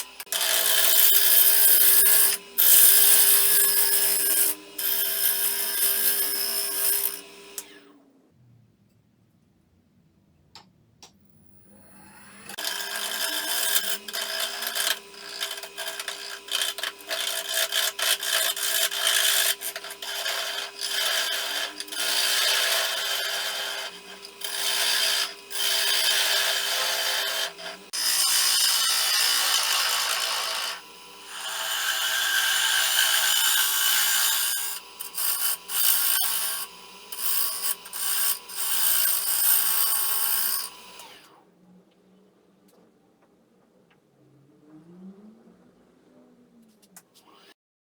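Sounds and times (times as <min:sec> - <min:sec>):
tool rasping on spinning wood: 0:00.0 - 0:07.6, 0:12.5 - 0:41.2
wood lathe humming: 0:00.0 - 0:07.8, 0:11.8 - 0:41.4.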